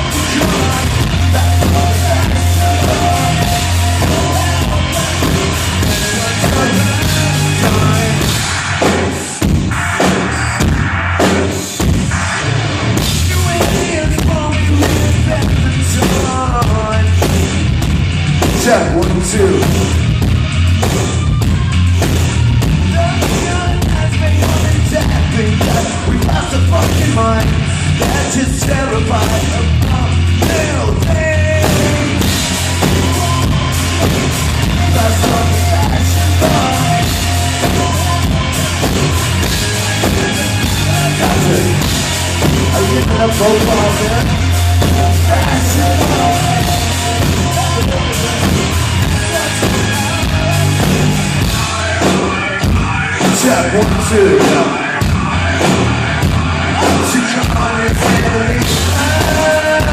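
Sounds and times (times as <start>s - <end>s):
person singing: 0.0s - 9.2s, 22.8s - 59.9s
rock band playing live: 0.0s - 59.9s.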